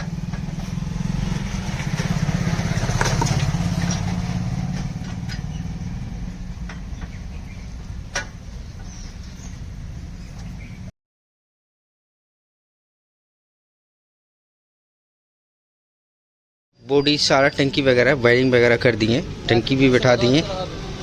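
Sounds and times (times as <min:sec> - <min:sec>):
small engine running: 0:00.1 - 0:06.2.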